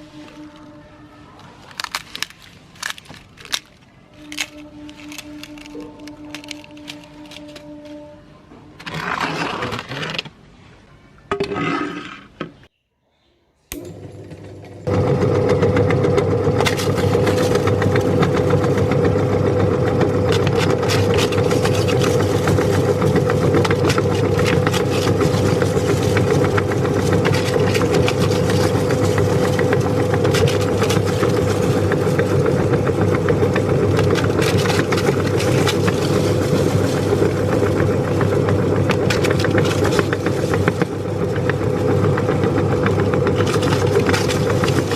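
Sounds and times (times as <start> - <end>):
electric meat grinder motor: 13.7 - 44.9.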